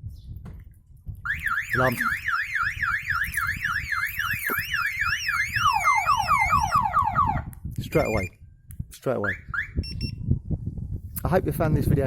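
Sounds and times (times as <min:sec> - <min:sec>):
van alarm siren warbling: 0:01.3 - 0:08.3.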